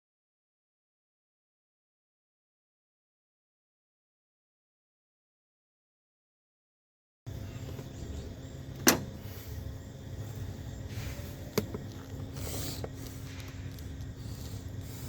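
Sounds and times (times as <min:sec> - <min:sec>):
low rumble of handling: 0:07.3 - 0:15.0.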